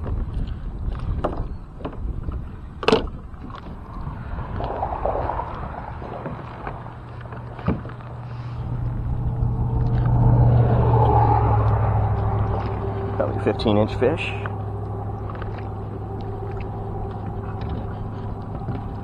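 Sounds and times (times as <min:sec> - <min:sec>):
knocks and rustles in a kayak: 0:00.0 - 0:08.9, 0:17.2 - 0:19.0
wind rumble on microphone: 0:00.0 - 0:19.0.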